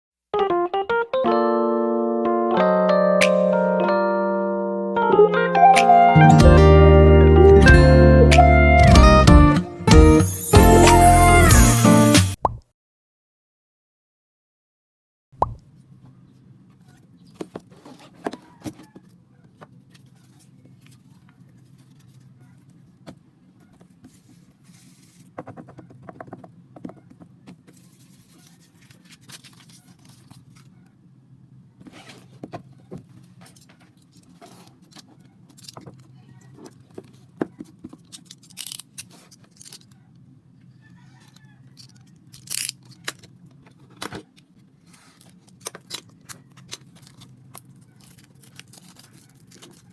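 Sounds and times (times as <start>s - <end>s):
packaging clicks and rustles: 26.2s - 30.8s, 31.8s - 40.0s, 41.2s - 49.9s.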